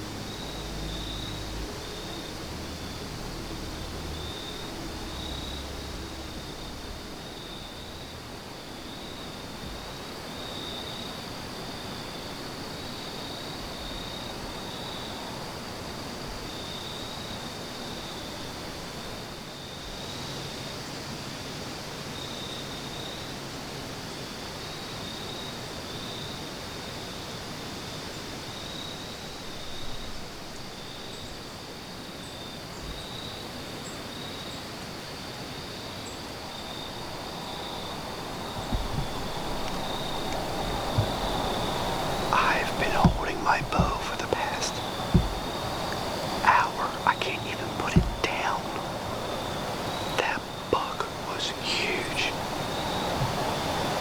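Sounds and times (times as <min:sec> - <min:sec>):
insects trilling: 0:00.0 - 0:23.4, 0:24.4 - 0:54.0
outdoor hiss: 0:28.0 - 0:54.0
soft thump: 0:38.4 - 0:46.2, 0:47.9 - 0:48.8.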